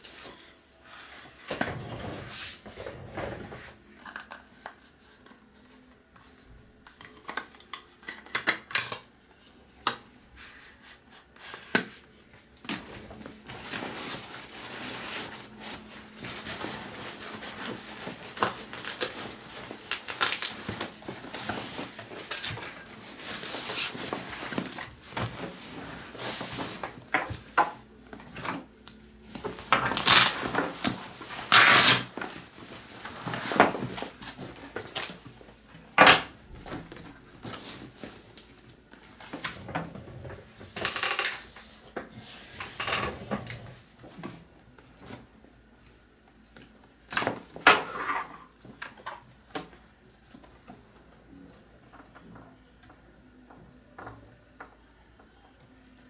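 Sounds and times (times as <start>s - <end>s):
fabric rustling: 12.8s - 28.3s, 29.3s - 35.2s
scraping strokes on bag: 31.3s - 32.1s.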